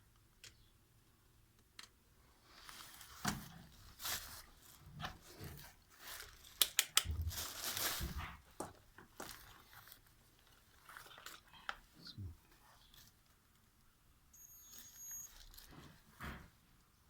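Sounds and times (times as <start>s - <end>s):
handling rustling and scraping: 2.4s - 11.9s, 14.7s - 16.6s.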